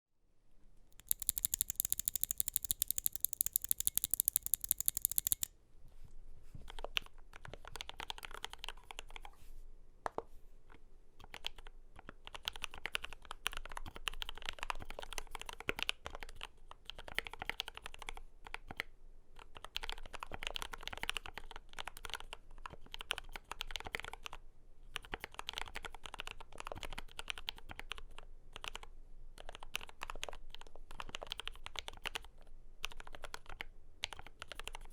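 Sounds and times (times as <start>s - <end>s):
rapid bright key clatter: 1.0s - 5.5s
typing on mechanical keyboard: 1.0s - 5.5s.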